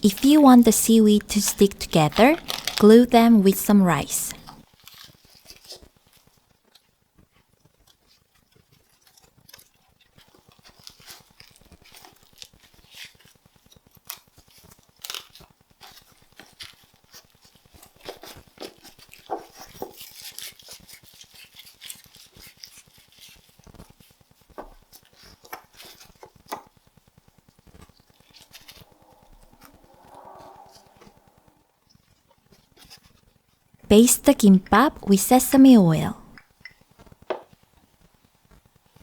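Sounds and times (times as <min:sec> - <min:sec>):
dry seaweed crackling: 0:02.4 - 0:02.8.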